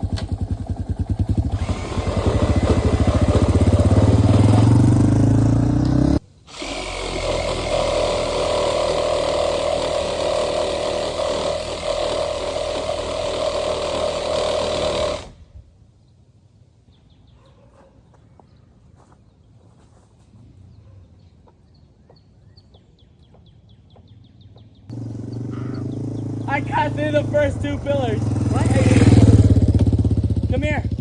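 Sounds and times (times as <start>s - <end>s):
power saw cutting wood: 1.4s - 15.4s, 24.9s - 29.9s.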